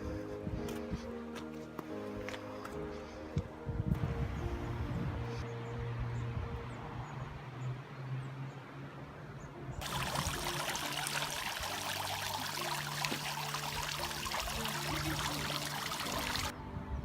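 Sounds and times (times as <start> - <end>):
rushing water: 9.8 - 16.5.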